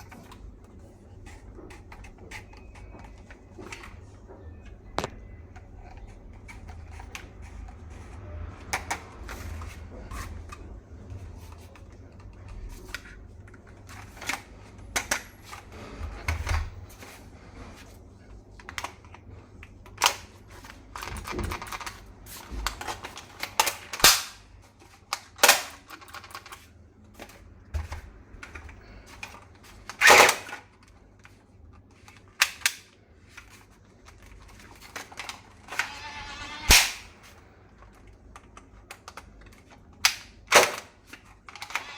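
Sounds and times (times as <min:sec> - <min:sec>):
plastic toy rifle clicks: 0:41.5 - 0:41.9.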